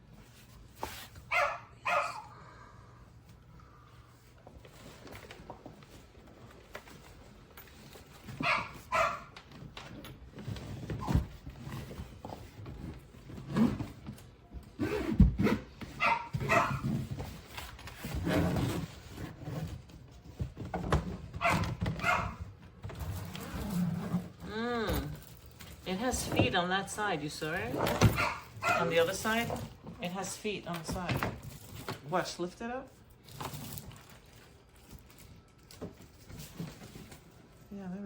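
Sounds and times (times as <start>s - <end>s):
dog barking: 1.3s - 2.3s, 8.4s - 9.3s, 16.0s - 16.9s, 21.4s - 22.4s, 28.1s - 28.9s.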